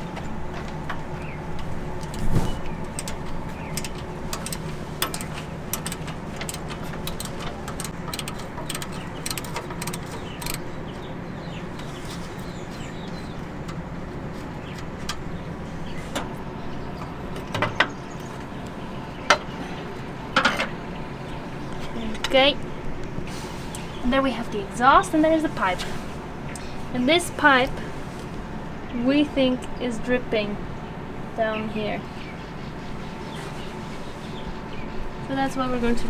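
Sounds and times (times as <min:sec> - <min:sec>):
steady low hum: 0:00.0 - 0:36.0
wrench clicking and knocking on metal: 0:02.0 - 0:10.7.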